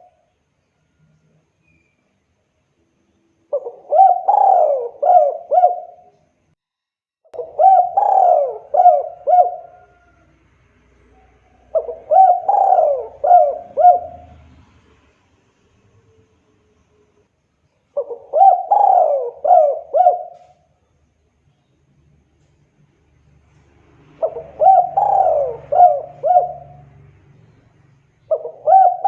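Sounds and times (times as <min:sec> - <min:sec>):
dove cooing: 0:03.5 - 0:06.2, 0:07.4 - 0:10.3, 0:11.1 - 0:14.5, 0:18.0 - 0:20.6, 0:24.2 - 0:27.1, 0:28.3 - 0:29.0.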